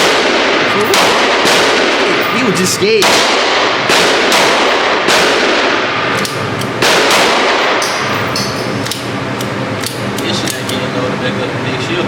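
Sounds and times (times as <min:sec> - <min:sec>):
gunshots echoing: 0:00.0 - 0:09.2.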